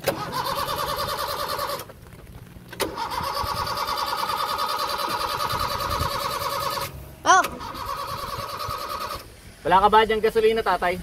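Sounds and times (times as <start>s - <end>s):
starter motor cranking engine: 0.0s - 1.9s, 2.7s - 9.3s.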